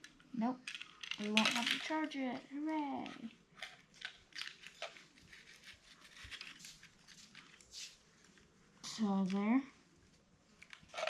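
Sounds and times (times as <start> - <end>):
plastic parts clicking and rustling: 0.0 - 8.5, 10.5 - 11.0.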